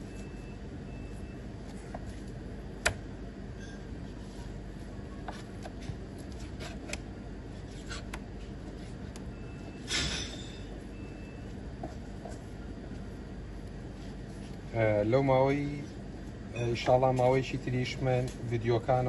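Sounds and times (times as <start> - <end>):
knife scraping: 6.3 - 7.0.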